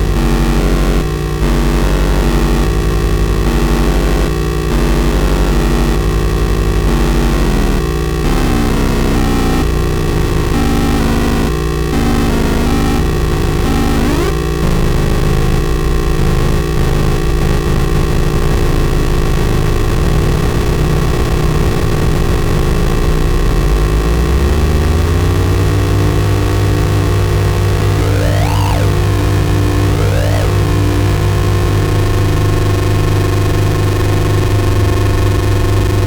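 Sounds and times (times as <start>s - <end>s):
electronic noise drone: 0.0s - 36.0s
low hum: 0.0s - 36.0s
rising and falling pitch sweeps: 20.2s - 31.1s.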